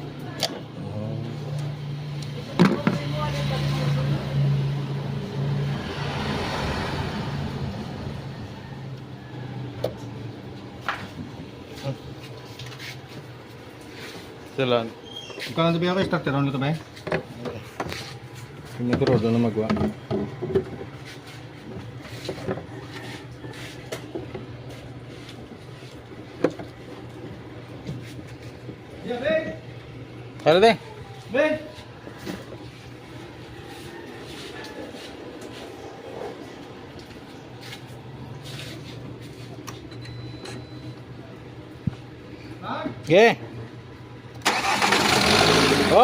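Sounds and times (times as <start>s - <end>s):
car engine hum: 43.6s - 46.0s.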